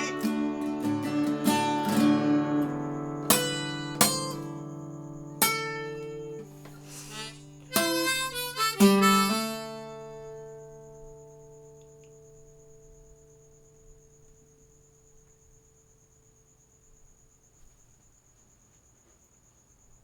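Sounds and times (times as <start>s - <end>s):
chords ringing out: 0.0s - 2.5s, 5.5s - 10.3s
long held notes: 0.0s - 2.5s, 6.0s - 10.6s.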